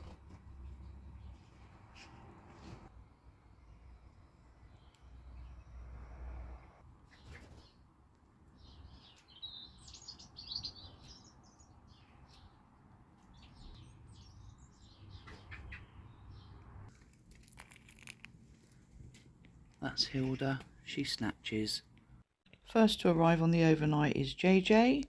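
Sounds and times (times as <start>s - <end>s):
small birds chirping: 0.0s - 5.9s, 7.0s - 22.2s.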